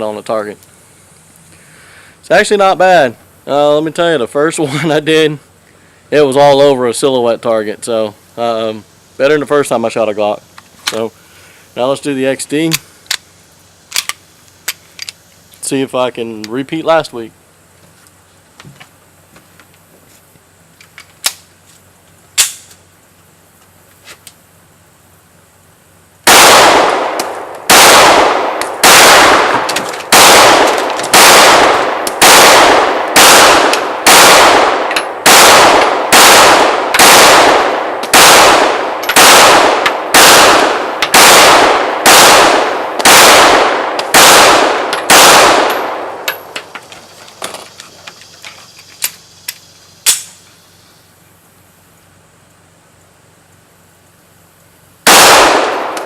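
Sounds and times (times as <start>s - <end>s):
gun handling clicks: 13.9s - 15.2s, 20.8s - 21.5s, 22.4s - 22.8s, 28.6s - 32.3s, 44.0s - 50.4s
pistol shots: 26.3s - 46.5s, 55.1s - 56.0s.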